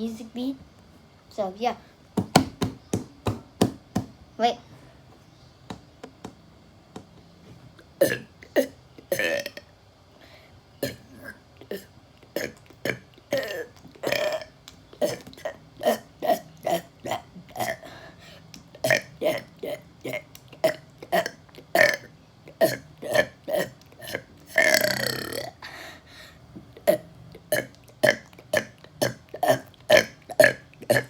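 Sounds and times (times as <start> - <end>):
man burping rhythmically: 7.9 - 9.8, 10.8 - 18.0, 18.7 - 25.8, 26.8 - 31.0.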